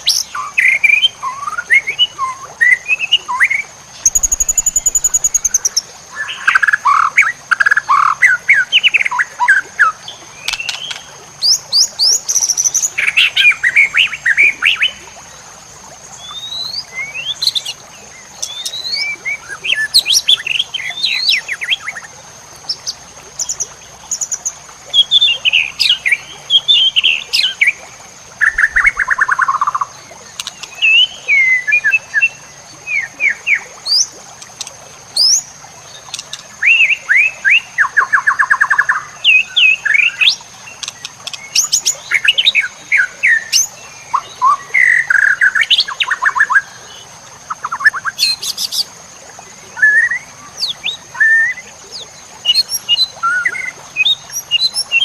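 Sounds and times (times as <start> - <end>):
bird singing whistles and trills: 0.0 - 15.0, 16.2 - 17.8, 18.4 - 22.1, 24.2 - 27.8, 28.4 - 34.1, 47.5 - 48.9, 49.7 - 55.0.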